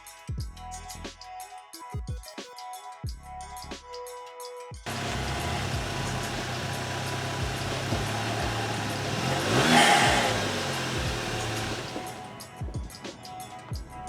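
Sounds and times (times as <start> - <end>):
car driving past: 4.9 - 12.6.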